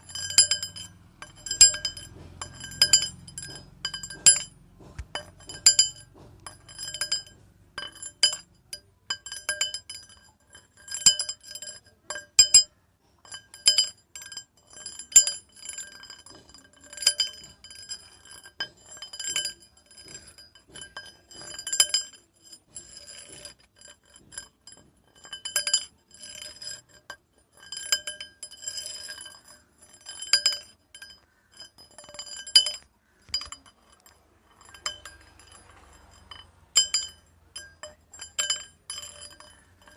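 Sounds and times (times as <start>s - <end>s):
metal rods clinking: 0.0s - 39.9s.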